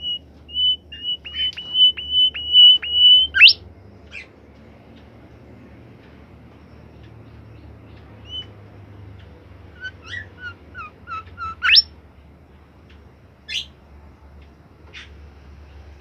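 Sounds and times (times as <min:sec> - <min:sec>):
songbird chirping and calling: 0:00.0 - 0:04.4, 0:06.5 - 0:12.0, 0:13.5 - 0:13.8.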